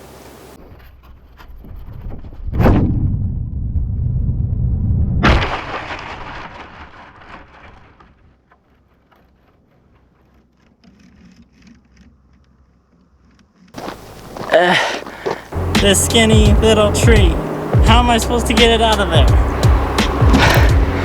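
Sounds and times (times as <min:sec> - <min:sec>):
glider crashing into branches: 0:05.2 - 0:08.2
leaves and twigs crackling: 0:13.8 - 0:15.8
wind buffeting microphone: 0:13.8 - 0:21.0.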